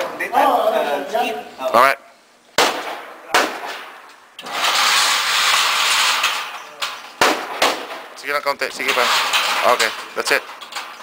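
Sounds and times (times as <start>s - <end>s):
pistol shots with echo: 2.6s - 4.0s, 7.2s - 8.1s.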